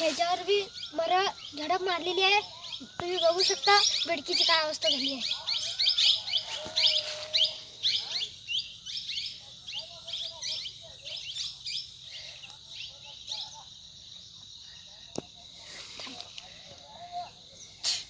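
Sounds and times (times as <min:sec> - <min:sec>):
faint high-pitched tone: 0:00.0 - 0:05.2
birds chirping: 0:00.0 - 0:18.0.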